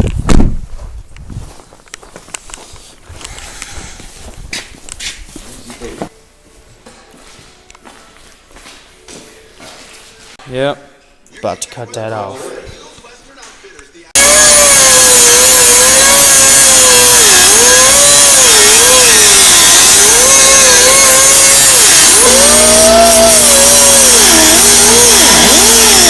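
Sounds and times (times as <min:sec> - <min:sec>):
grinder cutting steel pipe: 0:14.2 - 0:26.0.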